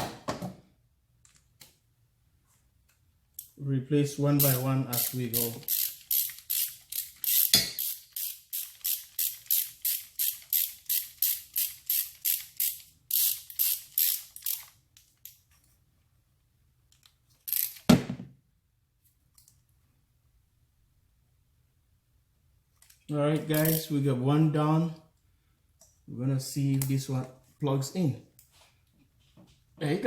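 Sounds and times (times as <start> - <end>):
ratchet wrench clicking: 4.4 - 15.4, 17.4 - 17.9, 23.6 - 23.9.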